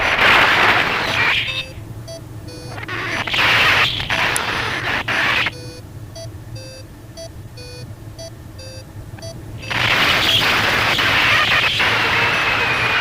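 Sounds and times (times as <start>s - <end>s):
two-pitch electronic warning beeps: 1.1s - 4.2s, 5.0s - 11.8s.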